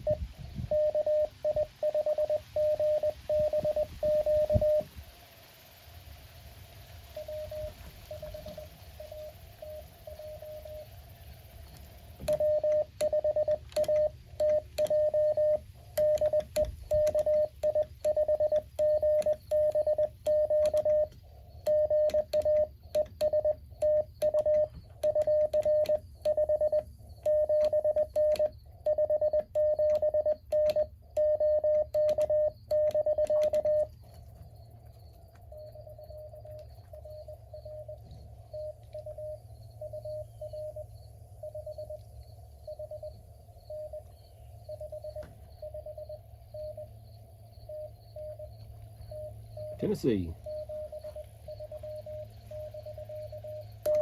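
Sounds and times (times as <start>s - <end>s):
morse code keyed tone: 0.0s - 4.9s, 7.0s - 54.0s
key clicks: 29.4s - 34.2s
radio band hiss: 49.6s - 51.5s.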